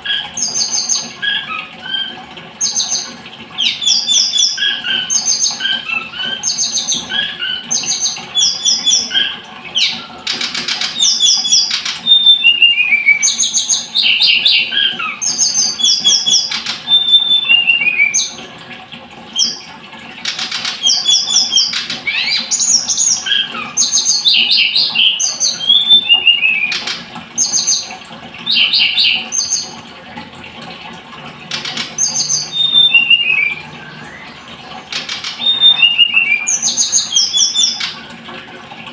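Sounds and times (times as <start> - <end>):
songbird singing: 31.5 - 38.0.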